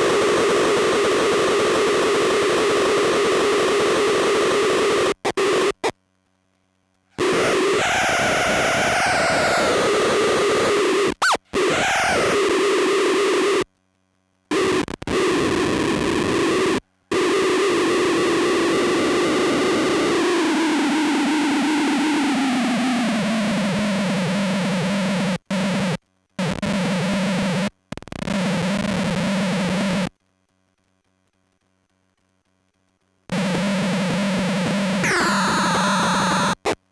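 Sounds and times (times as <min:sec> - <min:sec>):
buzzing synth fuzz drone: 0:34.2 - 0:36.8.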